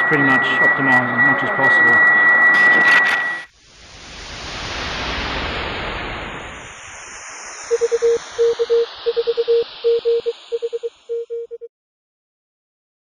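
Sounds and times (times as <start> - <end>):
morse code tone: 0.0 - 3.5, 7.7 - 11.7
radio static hiss: 4.3 - 11.0.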